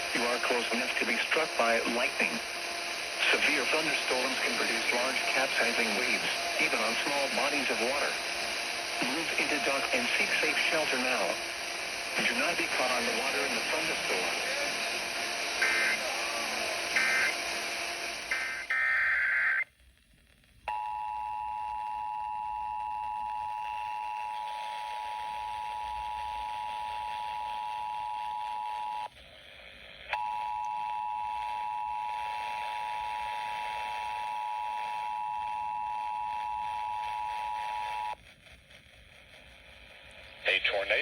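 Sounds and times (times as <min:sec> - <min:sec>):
warbling data tones: 0:00.2 - 0:19.6.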